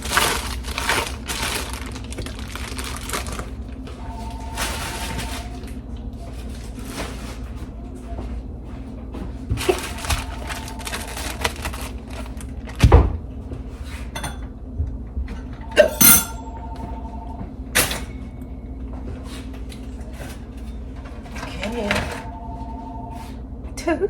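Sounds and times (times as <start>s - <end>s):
kitchen knocks and clatters: 13.9s - 16.6s.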